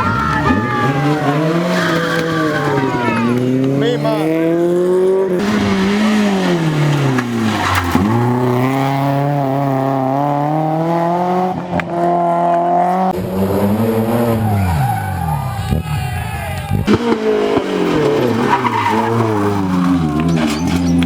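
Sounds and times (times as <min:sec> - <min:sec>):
rally car engine revving: 0:00.0 - 0:21.0.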